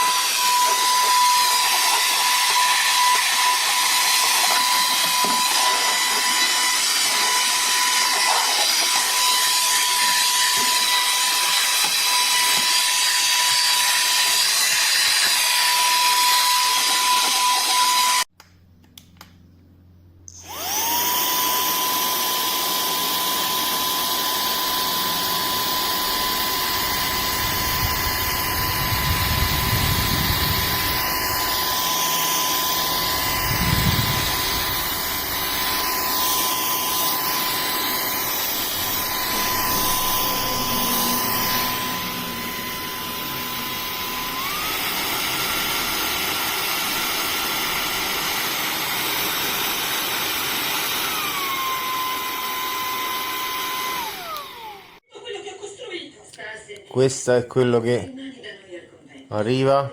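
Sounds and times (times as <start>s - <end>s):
handheld vacuum cleaner whine: 0.0s - 18.3s, 20.3s - 55.0s.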